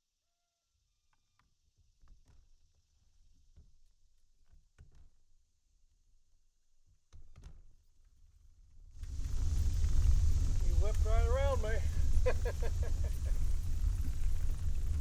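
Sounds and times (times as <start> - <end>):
low rumble: 9.1 - 15.0.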